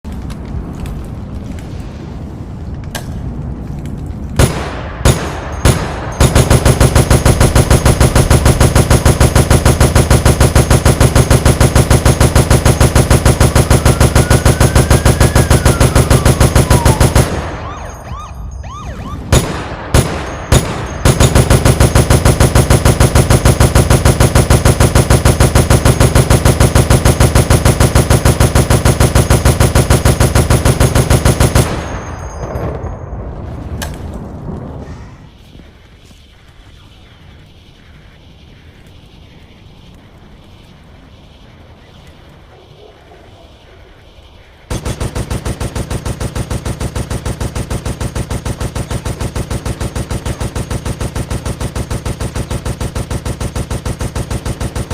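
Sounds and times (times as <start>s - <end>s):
machine gun firing: 4.4s - 18.0s, 19.3s - 32.6s, 44.7s - 54.9s.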